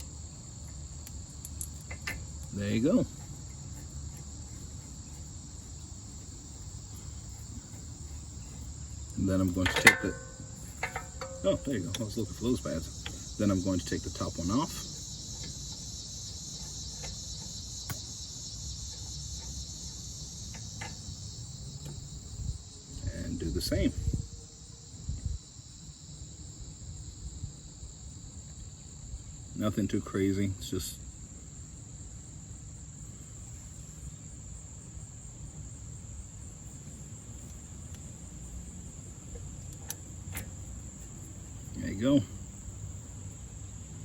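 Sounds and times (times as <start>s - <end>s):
faint clicks of parts: 0.0s - 2.6s, 6.9s - 18.1s, 39.3s - 42.0s
crickets trilling: 0.0s - 44.0s
insects chirring: 0.0s - 44.0s.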